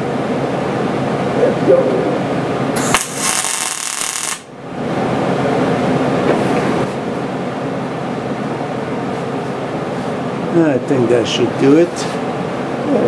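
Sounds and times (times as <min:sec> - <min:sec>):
steady background hum: 0:00.0 - 0:13.0
arc welder hiss: 0:02.8 - 0:04.5.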